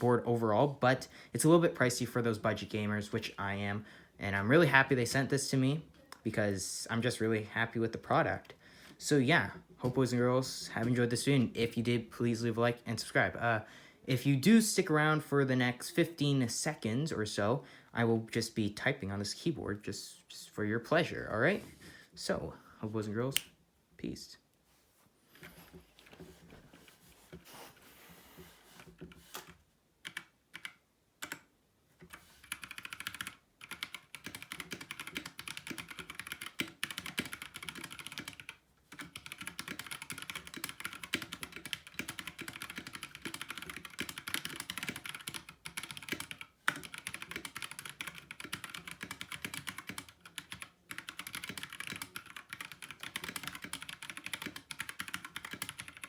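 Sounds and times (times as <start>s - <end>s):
mechanical keyboard typing: 29.2s - 31.4s, 32.0s - 56.0s.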